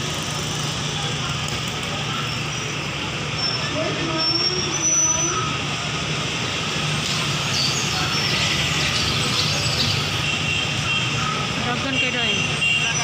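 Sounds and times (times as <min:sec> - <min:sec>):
distant voices: 0:00.0 - 0:13.0
steady traffic: 0:00.0 - 0:13.0.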